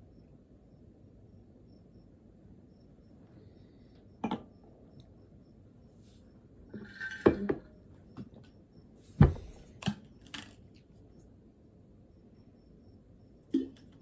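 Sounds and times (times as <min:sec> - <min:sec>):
objects knocking and clattering: 0:06.8 - 0:07.7, 0:09.2 - 0:10.6.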